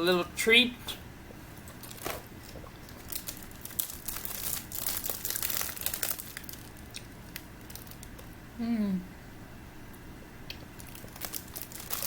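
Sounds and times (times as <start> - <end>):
plastic wrapper crinkling: 1.6 - 8.3, 10.7 - 12.0.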